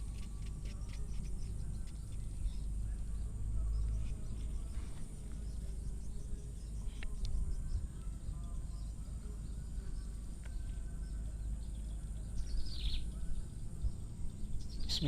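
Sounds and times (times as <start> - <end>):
steady low rumble: 0.0 - 15.0
high bird chirp: 5.3 - 15.0
faint ticks: 6.8 - 7.4.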